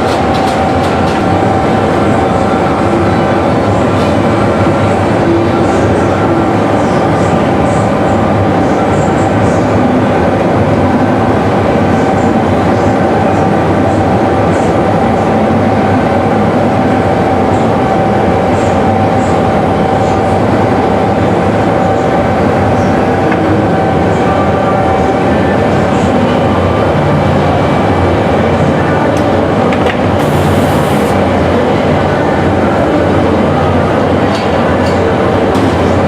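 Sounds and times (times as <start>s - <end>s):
machinery whining: 30.1s - 31.5s.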